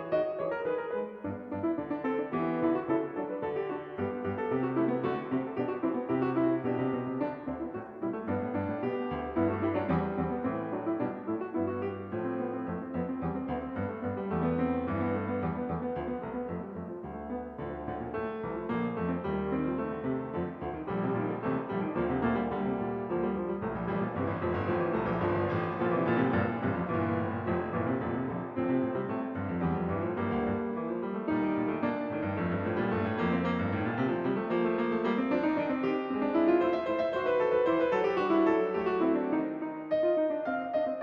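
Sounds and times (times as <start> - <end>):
background piano music: 0.0 - 41.0.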